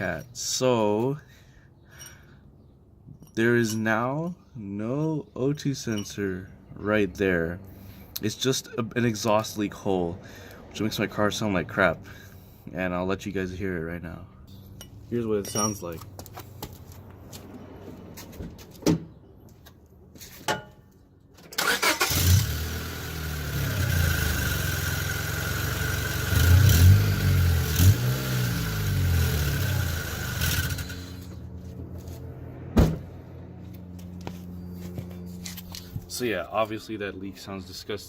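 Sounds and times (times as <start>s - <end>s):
car engine revving with raspy exhaust: 22.0s - 31.4s.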